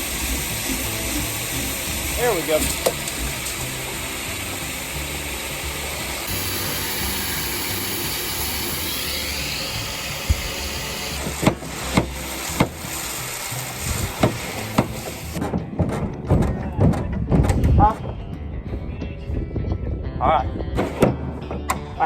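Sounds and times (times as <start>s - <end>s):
engine running: 0.0s - 15.4s.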